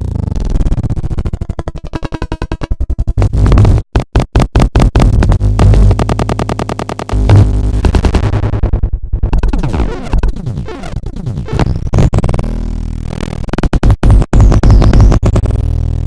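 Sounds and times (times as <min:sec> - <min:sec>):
glitchy electronic music: 0:03.2 - 0:16.0.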